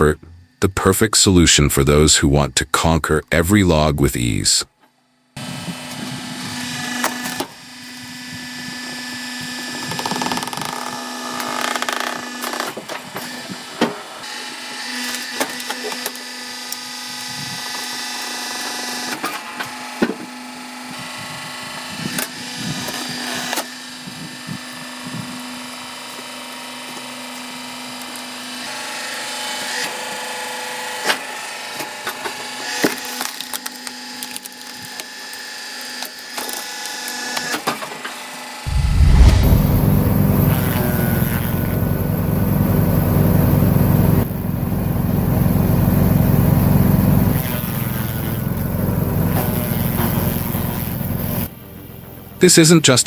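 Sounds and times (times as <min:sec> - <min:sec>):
steady motor hum: 0:38.7 - 0:52.4.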